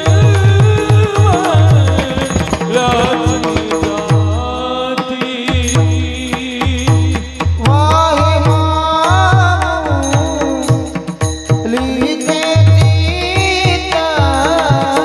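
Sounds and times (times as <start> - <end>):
person singing devotional melody: 0.0 - 15.0
drum beat: 1.3 - 4.3
held accompanying tones: 1.8 - 4.1.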